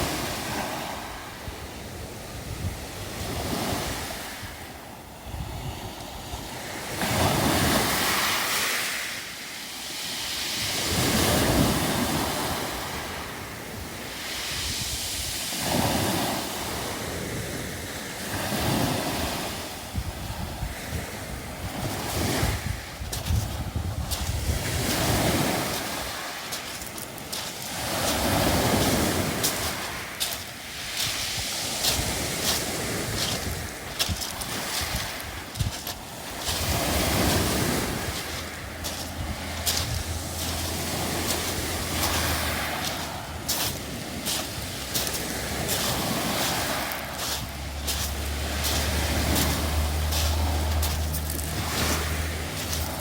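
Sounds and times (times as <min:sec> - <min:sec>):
waves washing up a beach: 0:00.0 - 0:53.0
wind buffeting microphone: 0:05.2 - 0:07.8, 0:18.5 - 0:53.0
footsteps on pebbles: 0:22.6 - 0:53.0
pebbles clattering in the wash: 0:38.2 - 0:53.0
low vehicle engine rumble: 0:47.4 - 0:53.0.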